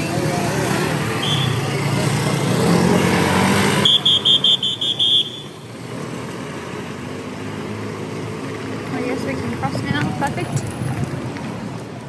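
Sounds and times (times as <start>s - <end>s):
road traffic passing: 0.0s - 12.0s.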